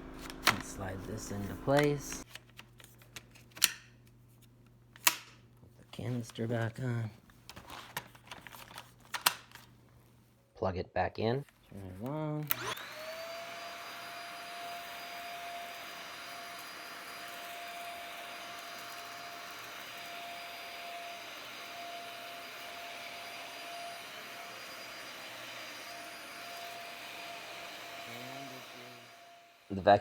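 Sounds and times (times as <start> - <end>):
vacuum cleaner motor whine: 0.0 - 2.2, 12.4 - 30.0.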